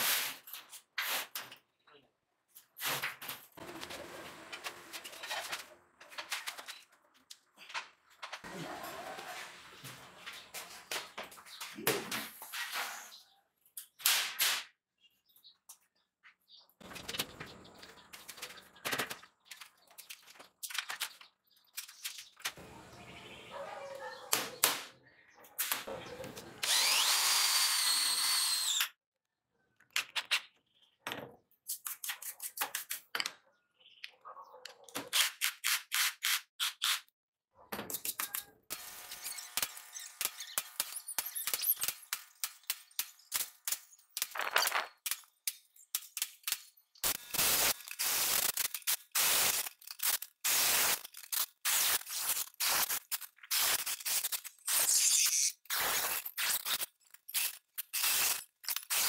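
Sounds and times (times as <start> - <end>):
power drill spinning up: 26.4 - 28.9.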